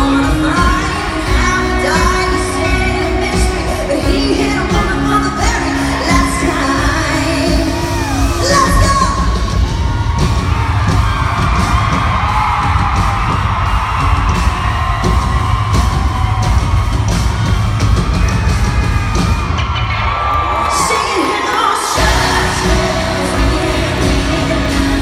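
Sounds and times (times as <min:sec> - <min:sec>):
woman singing: 0:00.0 - 0:09.4, 0:20.7 - 0:25.0
crowd yelling and whooping: 0:00.0 - 0:25.0
live country-pop band: 0:00.0 - 0:25.0.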